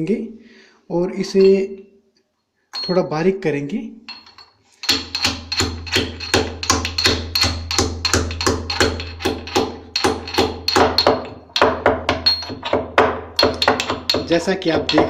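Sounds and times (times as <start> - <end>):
pestle pounding in a mortar: 4.8 - 15.0.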